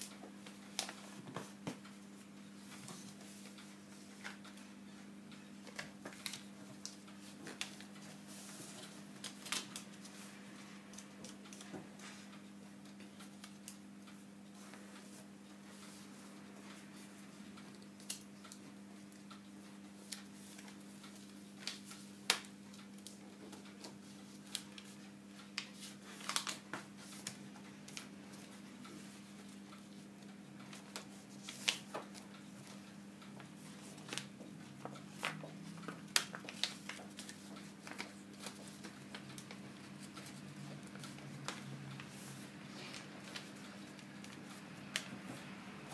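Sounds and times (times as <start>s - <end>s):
paper being folded and creased: 25.6s - 28.5s, 33.8s - 45.1s.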